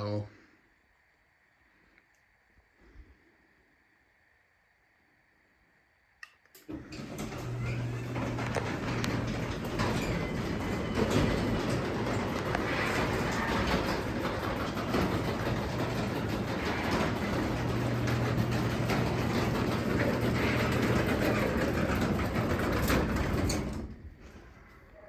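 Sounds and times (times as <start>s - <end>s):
garage door opener motor hum: 6.6s - 24.3s
door rattling in tracks: 6.7s - 24.3s.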